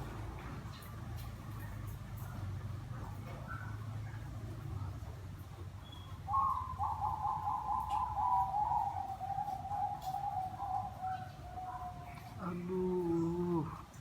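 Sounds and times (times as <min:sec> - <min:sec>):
dove cooing: 0:06.2 - 0:14.0.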